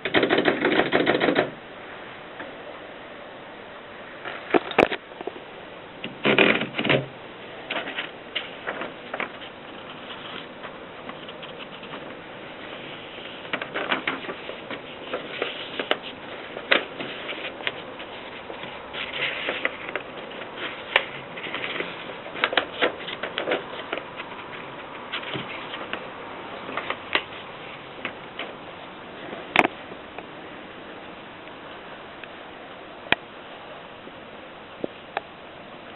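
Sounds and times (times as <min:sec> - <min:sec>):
typewriter keys clicking: 0:00.0 - 0:01.6.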